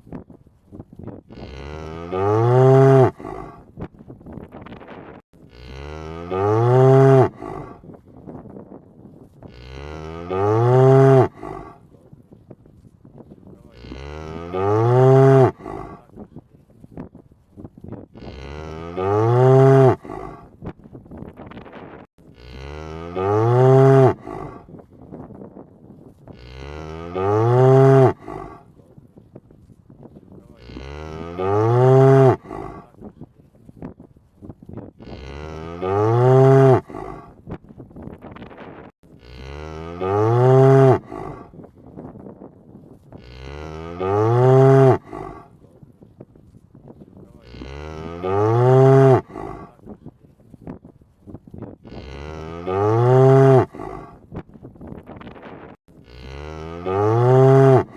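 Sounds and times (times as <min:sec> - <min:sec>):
cow mooing: 0:01.3 - 0:03.6, 0:05.5 - 0:07.8, 0:09.5 - 0:11.8, 0:13.7 - 0:16.1, 0:18.2 - 0:20.5, 0:22.3 - 0:24.7, 0:26.3 - 0:28.6, 0:30.5 - 0:32.9, 0:35.0 - 0:37.4, 0:39.2 - 0:41.6, 0:43.2 - 0:45.5, 0:47.3 - 0:49.8, 0:51.8 - 0:54.2, 0:56.0 - 0:57.9.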